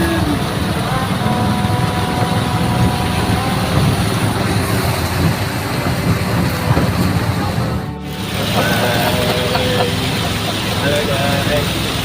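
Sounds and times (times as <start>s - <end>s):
minibus engine rumbling: 0.0s - 12.0s.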